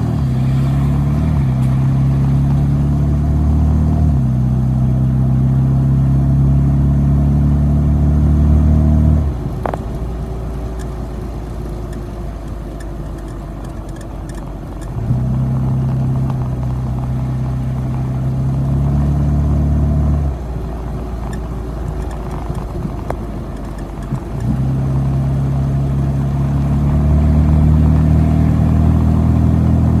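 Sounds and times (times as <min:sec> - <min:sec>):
car engine revving: 0:00.0 - 0:30.0
short rising squeak: 0:10.7 - 0:15.0, 0:21.3 - 0:24.6.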